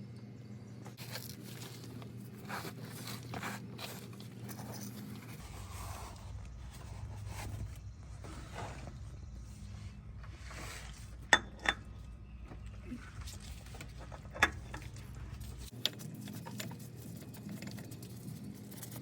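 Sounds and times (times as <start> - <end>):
low steady hum: 0.0 - 19.0
hands rustling and scraping: 0.9 - 11.3.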